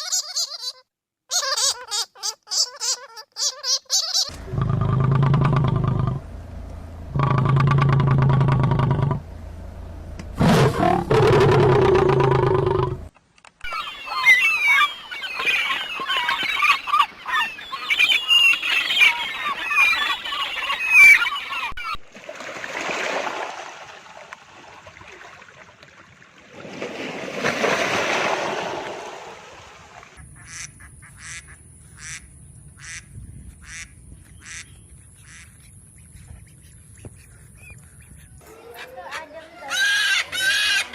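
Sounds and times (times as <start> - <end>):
pitched animal calls: 0.0 - 6.2, 7.2 - 9.2, 10.4 - 13.1, 13.7 - 22.0, 37.3 - 40.9.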